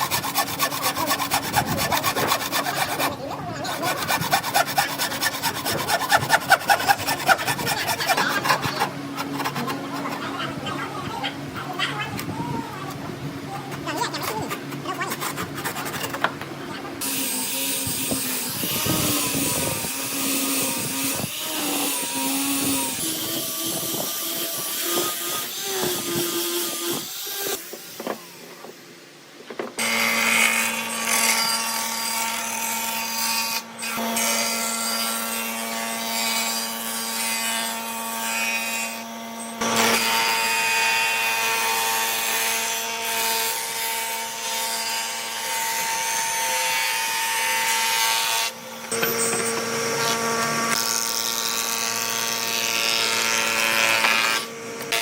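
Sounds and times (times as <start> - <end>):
power tool cutting wood: 0.0 - 11.2, 13.6 - 28.3, 29.8 - 55.0.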